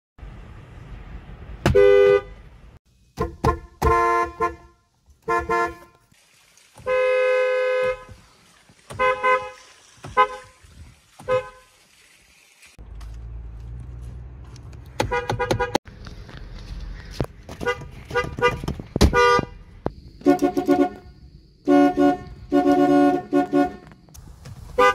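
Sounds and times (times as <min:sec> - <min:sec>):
two-tone car horn honking: 0:01.7 - 0:02.4, 0:03.2 - 0:06.0, 0:06.8 - 0:08.1, 0:08.9 - 0:09.6, 0:17.6 - 0:19.6, 0:20.2 - 0:21.1, 0:21.7 - 0:23.9.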